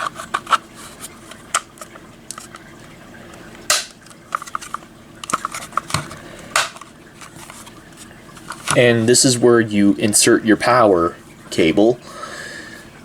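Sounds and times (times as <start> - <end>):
plastic housing snapping together: 3.7 - 6.9.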